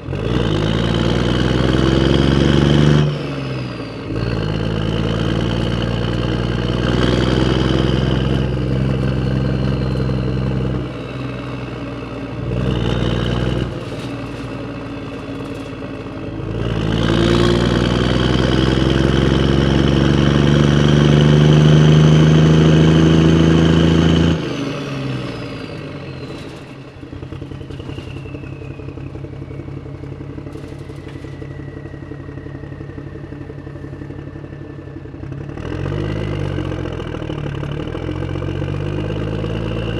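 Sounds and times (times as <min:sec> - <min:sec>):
vehicle engine revving: 0:00.0 - 0:39.9.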